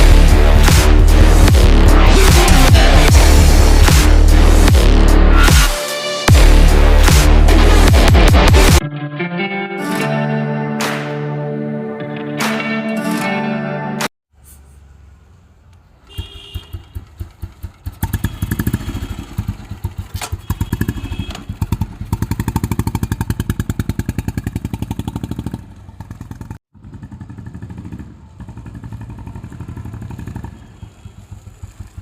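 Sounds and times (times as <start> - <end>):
motorcycle engine idling and revving: 0.0 - 5.4, 14.6 - 32.0.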